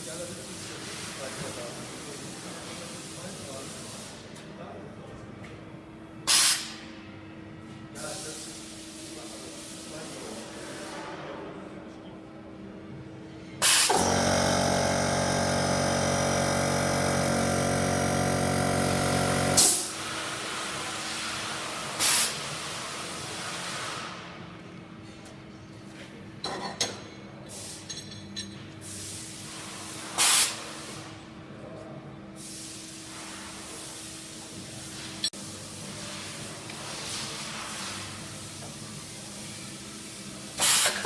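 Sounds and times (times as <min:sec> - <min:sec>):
pneumatic hiss: 0:06.3 - 0:06.8, 0:13.6 - 0:24.3, 0:28.8 - 0:31.2, 0:32.4 - 0:38.8, 0:40.5 - 0:41.0
short air blasts: 0:06.3 - 0:06.8, 0:13.6 - 0:24.3, 0:28.8 - 0:31.1, 0:32.4 - 0:35.2, 0:40.6 - 0:41.0
low machine hum: 0:12.0 - 0:20.6
loud welding buzz: 0:13.6 - 0:20.1.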